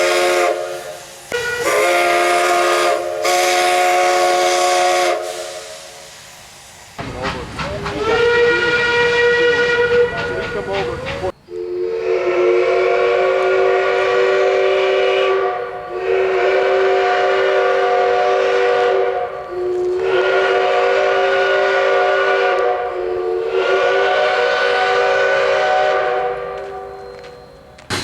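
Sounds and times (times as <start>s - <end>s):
steam locomotive chime whistle: 0.0s - 6.1s, 7.0s - 28.0s
hiss of escaping steam: 0.0s - 8.4s.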